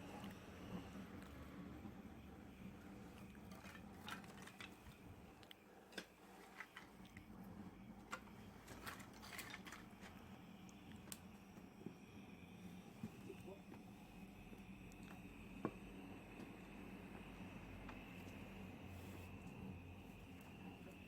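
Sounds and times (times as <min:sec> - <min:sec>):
small wood fire crackling: 0:00.0 - 0:15.4.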